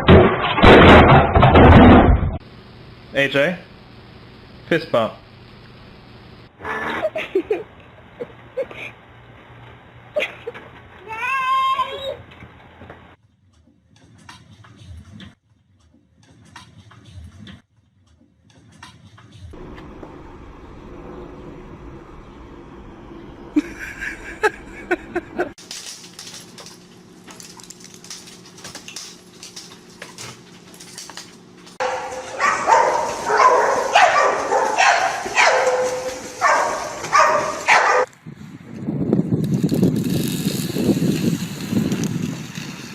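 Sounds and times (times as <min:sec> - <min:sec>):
dog barking and yelping: 0:31.8 - 0:38.1.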